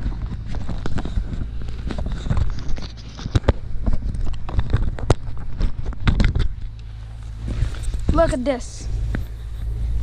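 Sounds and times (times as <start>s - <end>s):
footsteps in snow: 6.8s - 10.0s.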